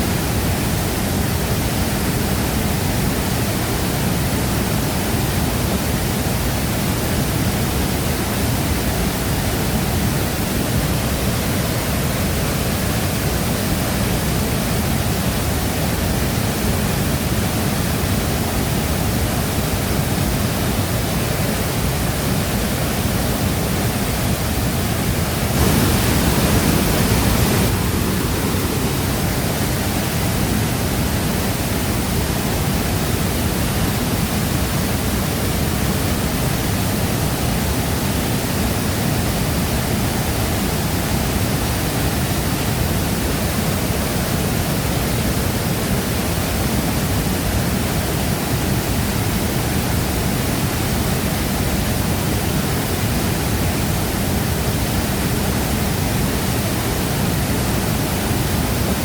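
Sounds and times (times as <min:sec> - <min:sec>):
waterfall rushing: 0:00.0 - 0:59.0.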